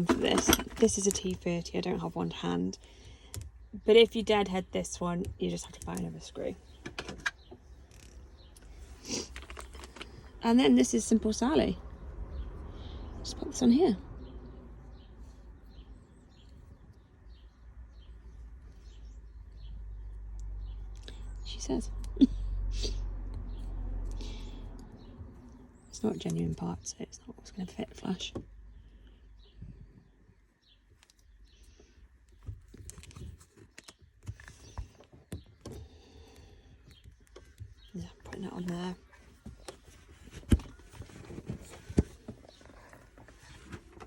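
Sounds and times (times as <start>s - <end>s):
plastic parts clicking and knocking: 0.0s - 1.5s, 5.2s - 8.2s, 9.2s - 10.3s.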